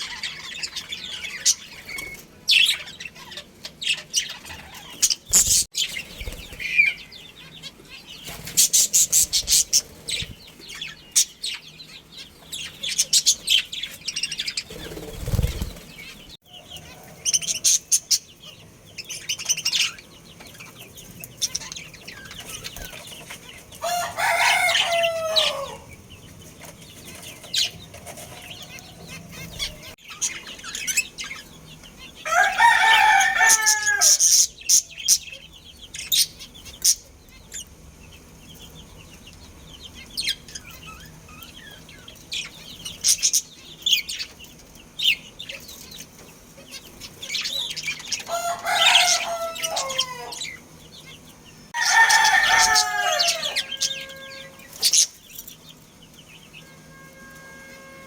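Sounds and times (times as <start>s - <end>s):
budgies chirping: 0.0s - 56.8s
rooster crowing: 23.8s - 25.9s, 32.2s - 34.3s, 48.2s - 50.6s, 51.8s - 54.9s, 56.6s - 58.0s.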